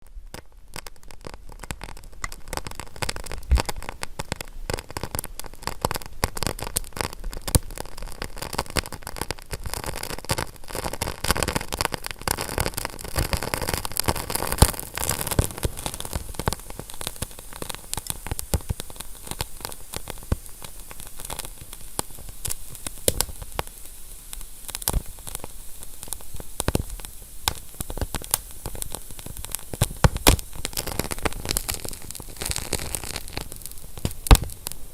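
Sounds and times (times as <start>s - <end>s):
wood fire crackling: 0.0s - 34.9s.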